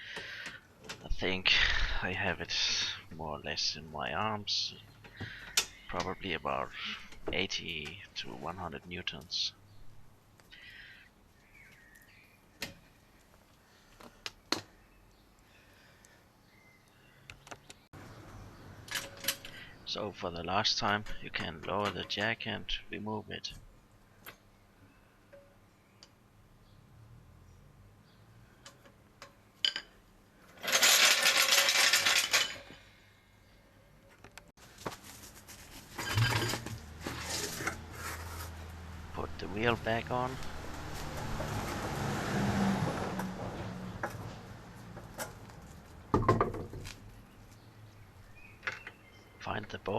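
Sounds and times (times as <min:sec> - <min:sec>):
car jack rattling and scraping: 0:29.7 - 0:32.9, 0:35.9 - 0:38.6.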